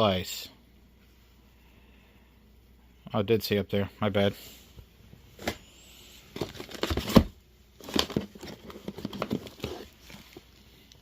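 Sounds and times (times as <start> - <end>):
plastic pouches crinkling: 6.3 - 11.0.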